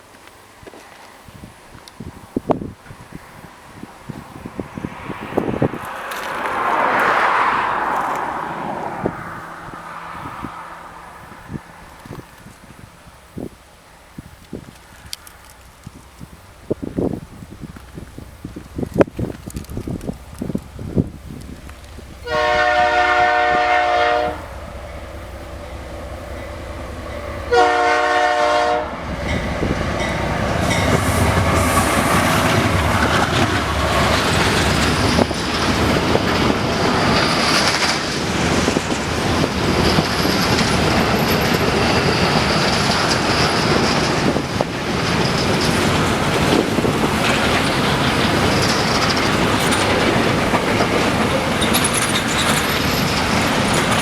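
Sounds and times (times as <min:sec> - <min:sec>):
train wagons rumbling and clattering: 0:00.0 - 0:54.0
train horn blowing: 0:22.2 - 0:34.2.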